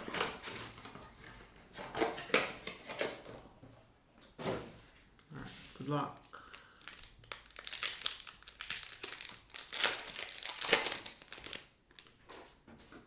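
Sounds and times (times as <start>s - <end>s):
wrapper crinkling as torn open: 6.5s - 12.2s.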